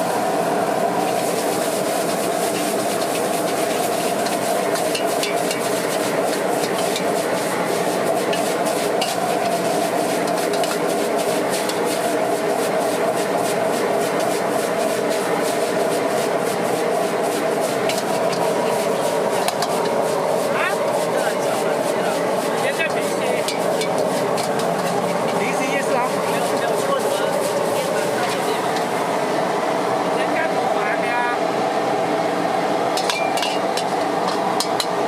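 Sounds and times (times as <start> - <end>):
food sizzling in a wok: 0.0 - 29.5, 32.9 - 35.0
gas burner flame roaring: 0.0 - 35.0
metal spatula scraping a wok: 1.1 - 28.9.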